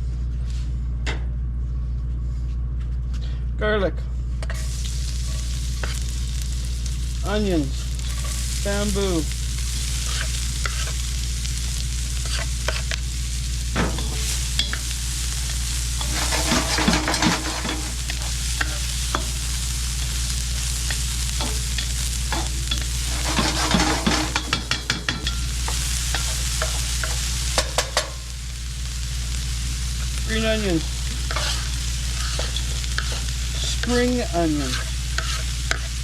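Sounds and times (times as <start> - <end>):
steady low hum: 0.0 - 36.0
spatula scraping wok: 4.4 - 36.0
food sizzling in oil: 4.5 - 36.0.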